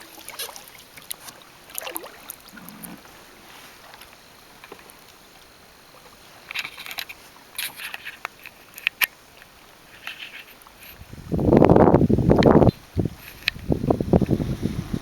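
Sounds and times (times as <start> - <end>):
water dripping and splashing: 0.0 - 10.9.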